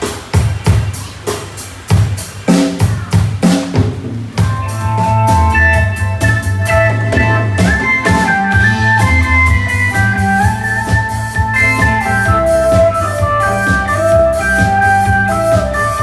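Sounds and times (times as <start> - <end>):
drum kit beats: 0.0 - 16.0
bass guitar: 2.9 - 16.0
electric guitar melody: 4.4 - 16.0.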